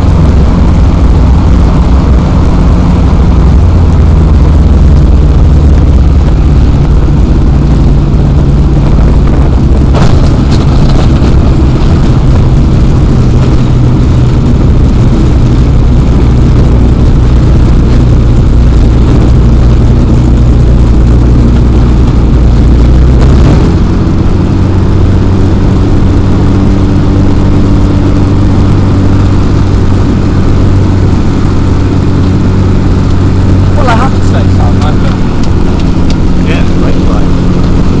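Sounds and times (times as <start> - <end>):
microlight engine and propeller: 0.0 - 38.0.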